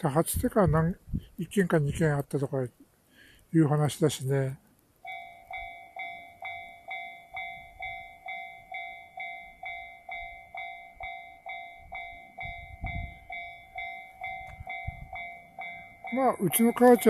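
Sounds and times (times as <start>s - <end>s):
level-crossing bell ringing: 5.0s - 17.0s
low rumble: 11.8s - 17.0s.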